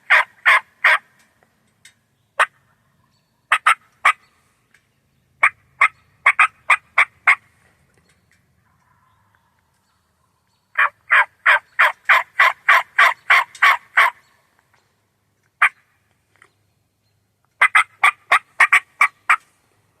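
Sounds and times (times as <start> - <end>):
turkey yelps: 0.0 - 1.1, 2.4 - 2.7, 3.5 - 4.2, 5.4 - 7.5, 10.8 - 14.2, 15.6 - 15.8, 17.6 - 19.5.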